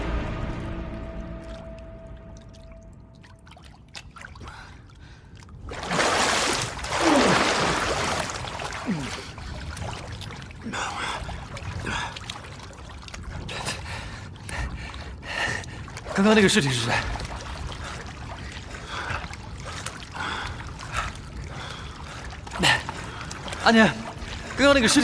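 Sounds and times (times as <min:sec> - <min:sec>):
water trickling: 0:00.0 - 0:25.0
water splashing loudly: 0:05.7 - 0:13.4.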